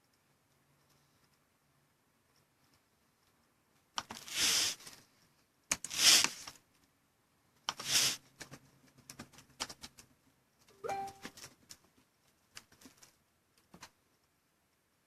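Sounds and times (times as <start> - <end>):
rustling hissy noise: 4.2 - 5.0, 5.9 - 6.5, 7.7 - 8.2
small clicks and taps: 7.6 - 14.8.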